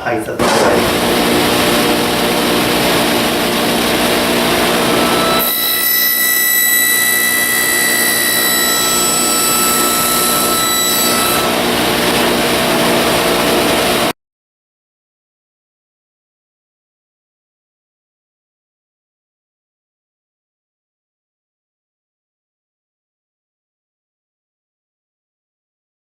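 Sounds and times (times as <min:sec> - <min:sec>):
table saw cutting wood: 0:00.4 - 0:14.1.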